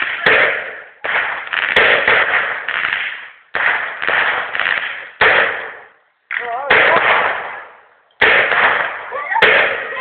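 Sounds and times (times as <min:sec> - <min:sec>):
firework hissing crackle: 0:00.0 - 0:05.9.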